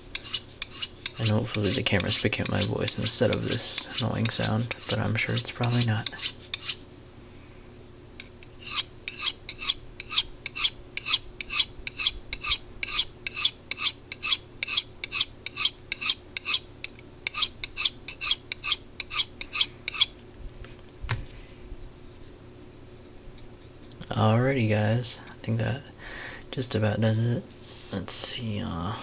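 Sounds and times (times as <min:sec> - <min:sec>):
knife scraping on sharpening rod: 0:00.1 - 0:06.8, 0:08.2 - 0:20.1.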